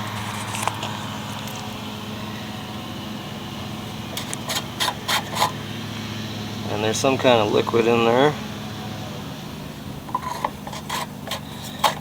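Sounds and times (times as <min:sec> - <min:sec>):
sharp clicks and knocks: 0:04.1 - 0:05.6.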